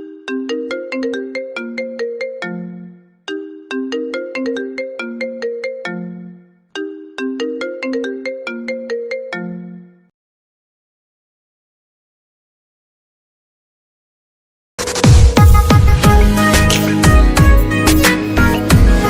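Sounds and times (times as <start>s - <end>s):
smartphone ringtone melody: 0.0s - 10.1s.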